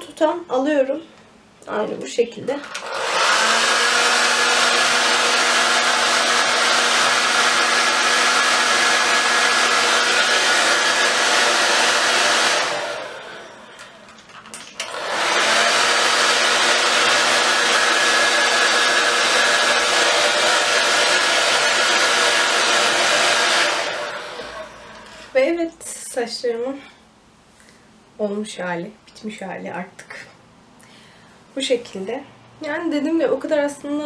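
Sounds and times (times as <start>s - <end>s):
hair dryer blowing: 2.6s - 14.0s, 14.8s - 25.4s.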